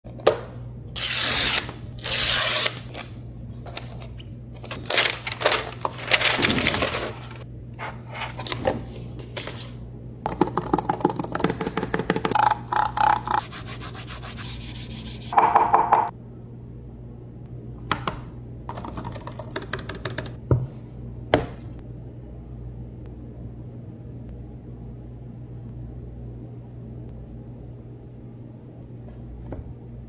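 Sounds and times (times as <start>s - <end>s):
steady low hum: 0.1s - 30.0s
packaging rustling: 3.7s - 7.4s.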